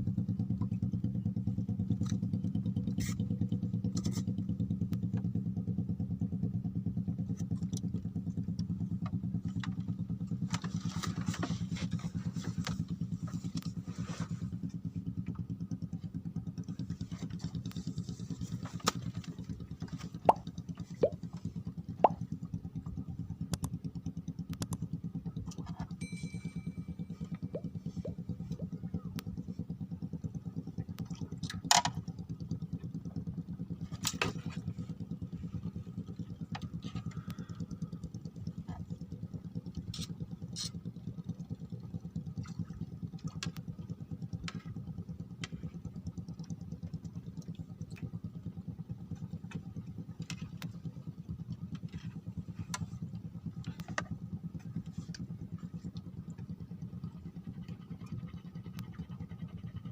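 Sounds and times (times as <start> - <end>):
small engine running: 0.0 - 59.9
sharp clicks and knocks: 23.5 - 23.8, 24.5 - 24.9.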